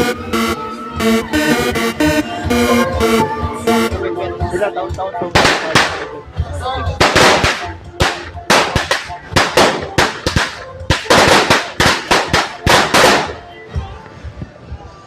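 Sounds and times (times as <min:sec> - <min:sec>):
fireworks and firecrackers banging: 0:05.3 - 0:06.2, 0:07.0 - 0:13.6.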